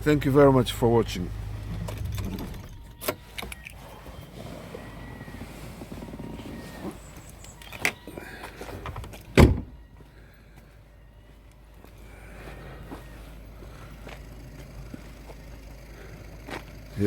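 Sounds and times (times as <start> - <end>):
car door shutting: 1.4 - 8.0, 8.8 - 9.8.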